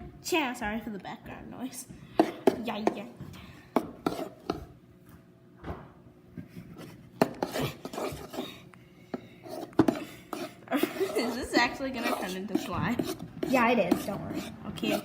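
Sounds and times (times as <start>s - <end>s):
spoon scraping a mixing bowl: 3.8s - 4.7s, 6.7s - 15.0s.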